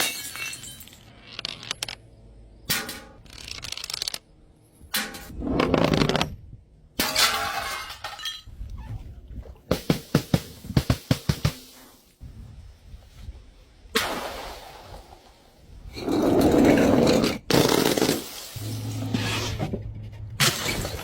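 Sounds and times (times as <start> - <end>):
glass bottles smashing: 0.0 - 1.1, 7.0 - 8.5.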